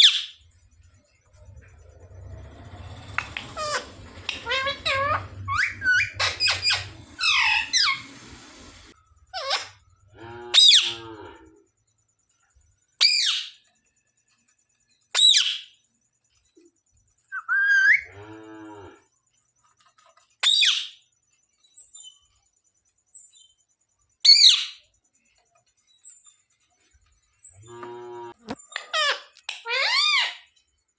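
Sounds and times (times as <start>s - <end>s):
parrot raspy call: 3.2s - 8.1s, 10.5s - 11.0s
parrot screeching: 3.2s - 8.1s, 9.3s - 9.8s, 10.5s - 11.0s, 13.0s - 13.6s, 17.4s - 18.1s, 28.8s - 30.5s.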